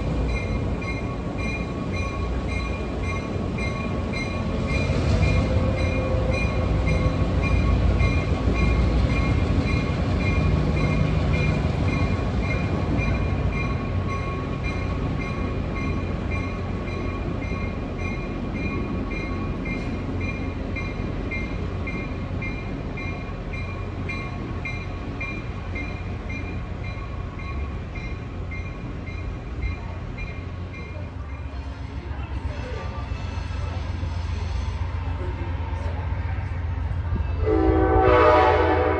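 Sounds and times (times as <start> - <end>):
train rumbling past: 0.0 - 38.9.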